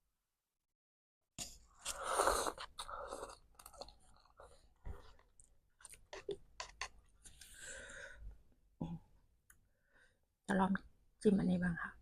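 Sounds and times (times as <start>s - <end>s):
person chewing crunchy food: 1.4s - 6.9s.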